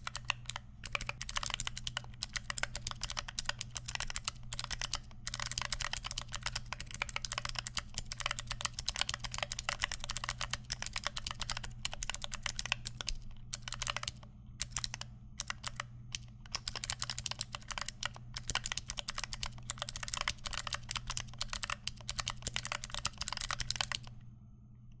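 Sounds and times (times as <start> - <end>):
mechanical keyboard typing: 0.0 - 24.2
faint low hum: 0.0 - 25.0.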